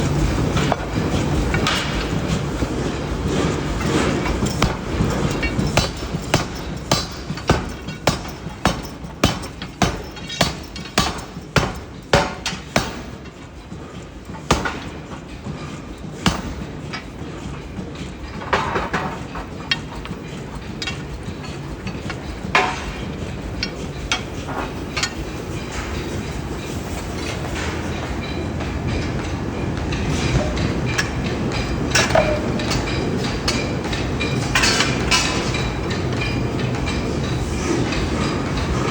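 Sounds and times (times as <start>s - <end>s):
machinery rumbling: 0.0s - 38.9s
metal knocks and clanks: 0.5s - 38.9s
heavy hammer blows on metal: 3.8s - 13.3s.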